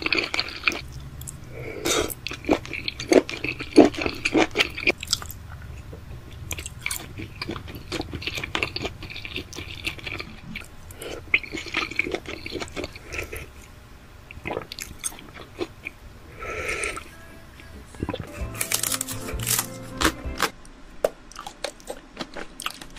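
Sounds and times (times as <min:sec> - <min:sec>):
parrot crunching food: 0:02.1 - 0:13.6, 0:18.1 - 0:22.9.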